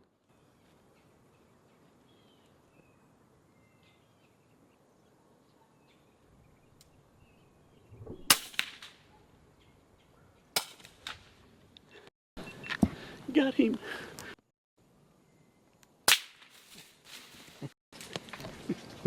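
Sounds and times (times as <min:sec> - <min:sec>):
faint bird chirps: 0:00.3 - 0:08.3.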